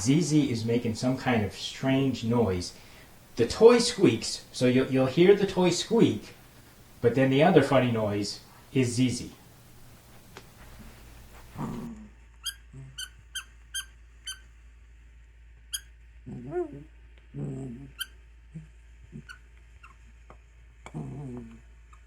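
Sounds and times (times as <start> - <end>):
dog making low vocal noises: 11.5 - 13.1, 16.2 - 19.4, 20.8 - 21.9
squeaky dog toy squeaking: 12.4 - 14.5.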